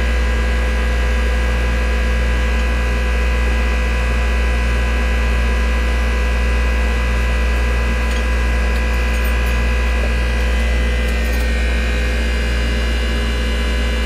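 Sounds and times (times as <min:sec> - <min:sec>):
machinery humming: 0:05.0 - 0:14.0.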